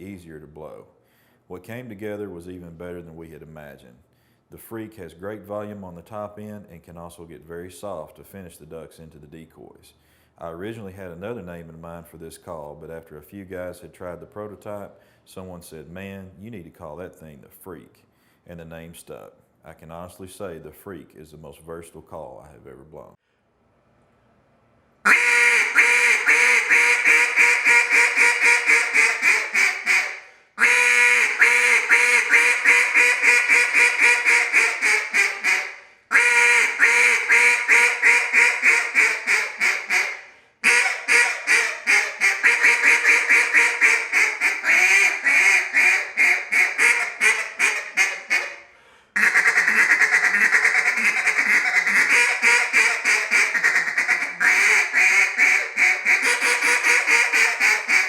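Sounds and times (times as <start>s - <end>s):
duck call raspy quacks: 25.1s - 48.6s, 49.2s - 58.0s.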